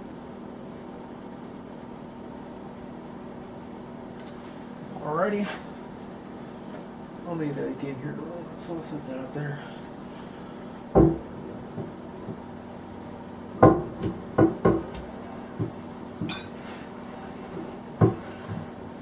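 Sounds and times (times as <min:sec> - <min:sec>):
sharp metal clunks and knocks: 0:11.0 - 0:12.4, 0:13.6 - 0:16.5.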